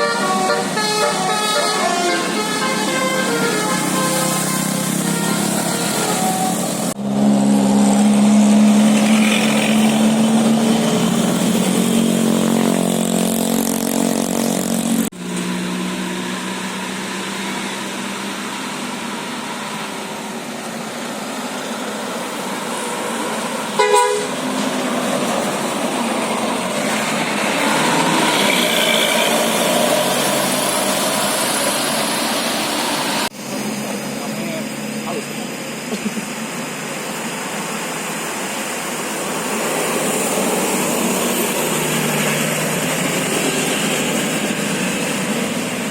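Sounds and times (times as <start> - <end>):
musical bus air horn chord: 0.0 - 6.9, 23.8 - 24.4
vehicle noise: 0.0 - 45.9
short horn toot: 23.8 - 24.4.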